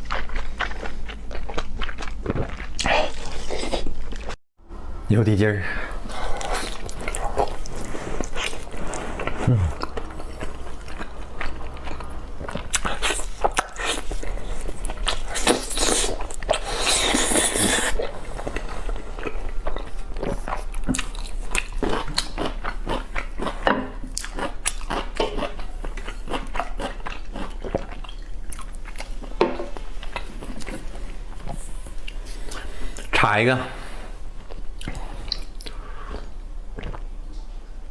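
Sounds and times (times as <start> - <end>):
chewing and biting: 0.0 - 4.4, 6.2 - 29.3.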